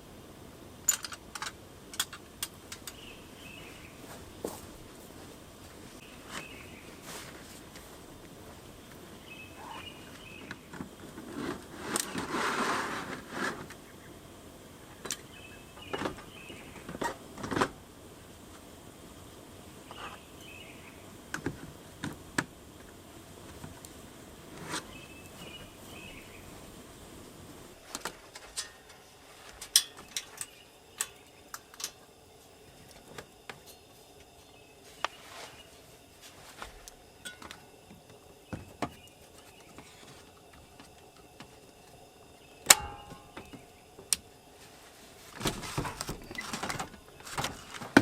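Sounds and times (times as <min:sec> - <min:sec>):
quiet forest background: 0:00.0 - 0:48.0
sharp clicks and light knocks: 0:00.9 - 0:03.0
faint bird chirps: 0:09.2 - 0:10.7, 0:19.8 - 0:21.1.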